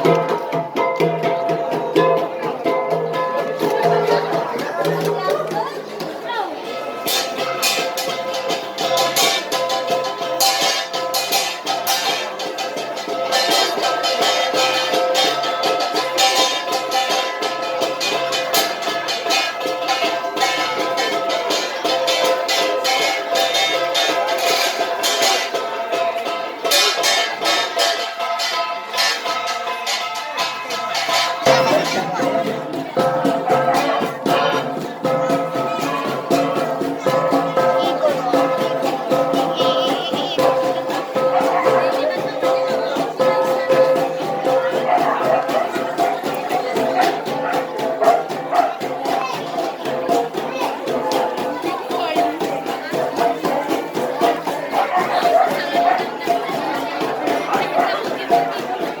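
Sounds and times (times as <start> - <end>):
bronze gong ensemble: 0.0 - 59.0.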